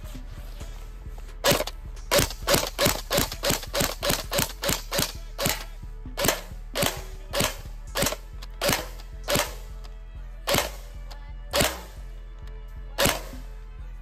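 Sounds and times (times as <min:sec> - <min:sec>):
airsoft gun firing single shots: 0:01.4 - 0:09.9, 0:10.5 - 0:12.2, 0:13.0 - 0:13.5.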